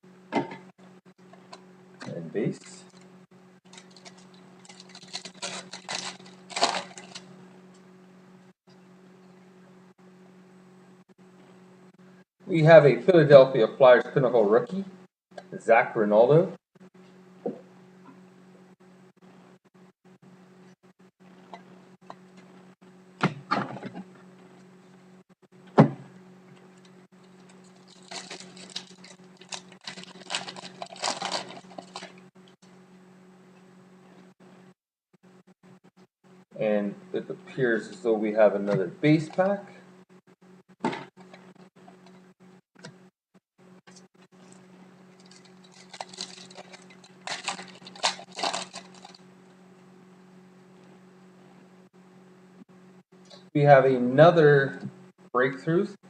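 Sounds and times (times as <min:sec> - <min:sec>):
low electrical hum: 0:00.0 - 0:56.0
foil card pack crinkling: 0:03.6 - 0:07.3, 0:27.2 - 0:32.2, 0:44.4 - 0:49.2
wrapper being torn open: 0:03.7 - 0:07.3, 0:27.5 - 0:32.2, 0:45.2 - 0:49.2.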